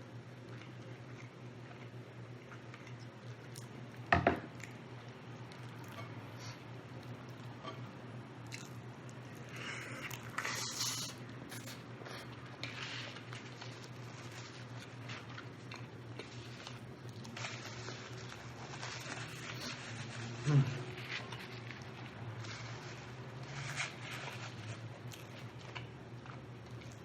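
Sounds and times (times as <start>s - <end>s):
steady low hum: 0.0s - 27.0s
person chewing and biting food: 5.4s - 22.8s, 23.5s - 27.0s.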